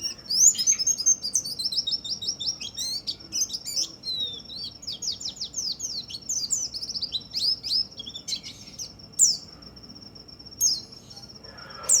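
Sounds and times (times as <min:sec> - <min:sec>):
bird warbling high chirps: 0:00.0 - 0:09.5.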